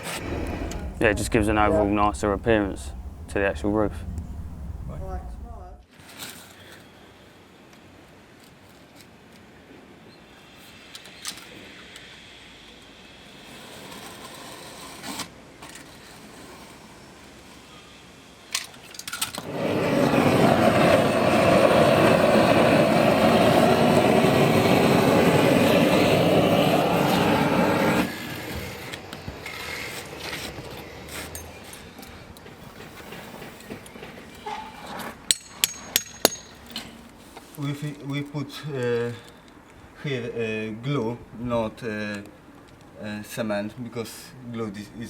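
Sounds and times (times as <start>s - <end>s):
gas torch burning: 0.0s - 5.7s, 19.4s - 30.8s.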